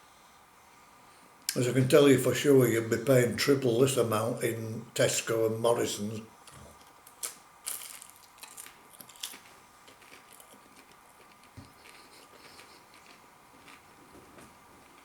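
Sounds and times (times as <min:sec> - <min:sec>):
faint crisp clicks and crackles: 0:06.4 - 0:15.0.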